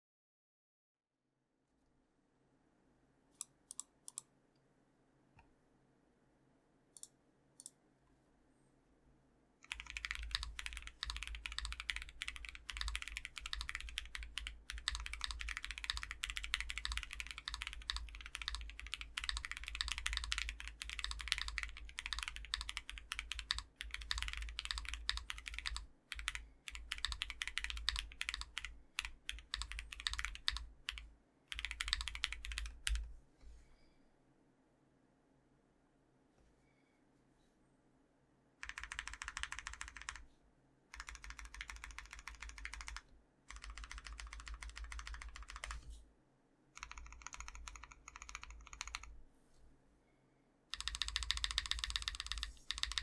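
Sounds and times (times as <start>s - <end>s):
mechanical keyboard typing: 9.6s - 33.1s, 38.6s - 40.2s, 40.9s - 45.8s, 46.8s - 49.1s, 50.7s - 53.0s.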